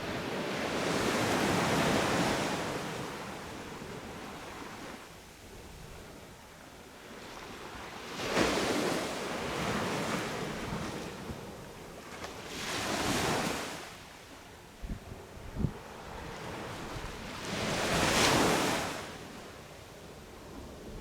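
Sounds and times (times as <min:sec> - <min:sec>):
wind buffeting microphone: 0:14.8 - 0:18.4
sea waves breaking on beach: 0:15.8 - 0:19.4.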